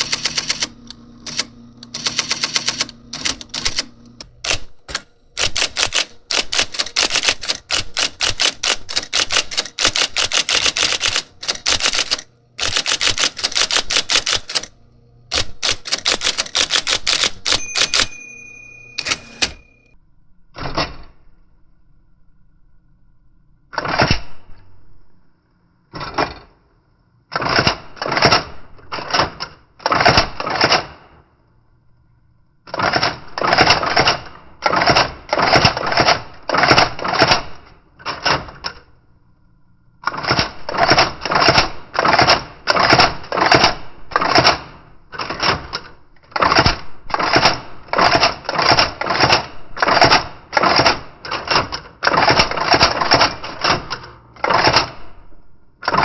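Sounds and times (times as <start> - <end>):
electric typewriter typing: 0.0 - 19.9, 32.7 - 38.8, 40.0 - 55.0.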